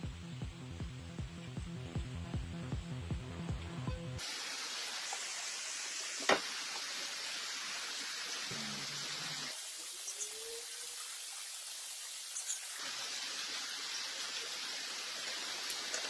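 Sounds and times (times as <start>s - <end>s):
electronic music with a beat: 0.0s - 4.2s
steady hiss: 4.2s - 16.0s.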